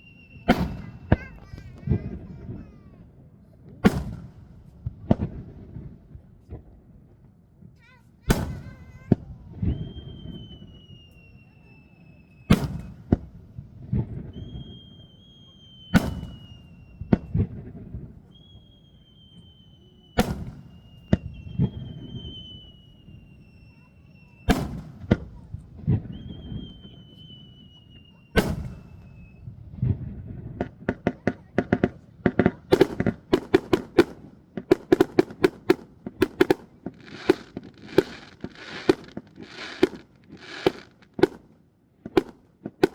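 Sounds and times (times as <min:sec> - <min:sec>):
firework whistles falling in pitch: 0:00.0 - 0:01.9, 0:08.4 - 0:13.5, 0:14.1 - 0:17.6, 0:18.2 - 0:29.6, 0:32.7 - 0:41.4, 0:42.2 - 0:42.9
rapid firework bursts and crackles: 0:00.5 - 0:03.0, 0:03.8 - 0:05.8, 0:07.9 - 0:09.6, 0:12.5 - 0:14.3, 0:16.0 - 0:16.6, 0:24.5 - 0:26.0, 0:28.4 - 0:29.0, 0:29.8 - 0:42.9
firework shells bursting: 0:32.7 - 0:42.9.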